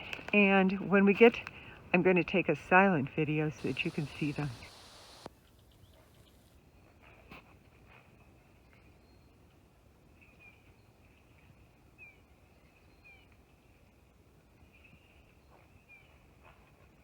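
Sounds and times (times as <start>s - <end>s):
high-pitched insect chorus: 3.6s - 5.3s.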